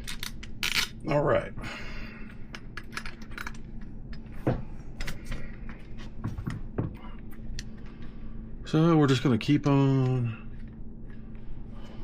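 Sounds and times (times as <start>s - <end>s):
small metal parts clinking: 2.5s - 3.7s.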